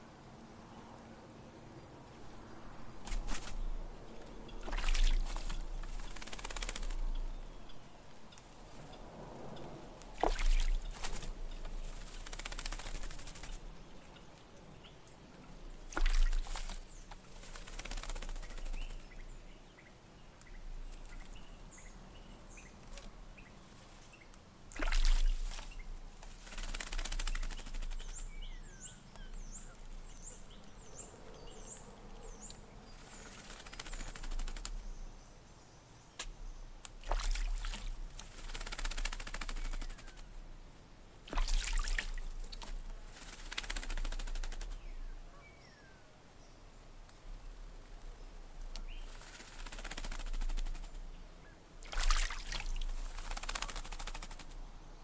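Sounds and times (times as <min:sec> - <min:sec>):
bird splashing in water: 0:02.6 - 0:07.2, 0:10.0 - 0:13.7, 0:15.7 - 0:19.1, 0:22.2 - 0:30.8, 0:32.2 - 0:34.8, 0:36.9 - 0:40.3, 0:41.2 - 0:44.8, 0:48.8 - 0:51.0, 0:51.8 - 0:54.6.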